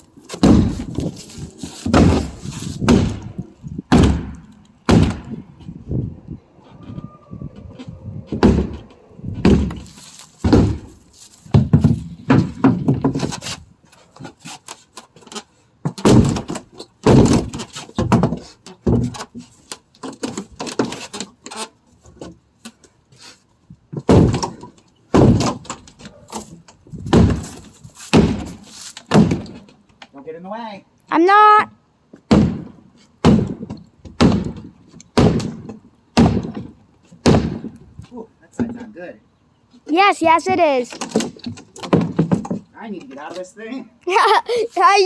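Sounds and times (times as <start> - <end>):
heavy blows smashing wood: 0.3 - 5.5, 8.3 - 13.4, 16.0 - 19.2, 24.0 - 25.9, 27.0 - 29.6, 32.3 - 37.8.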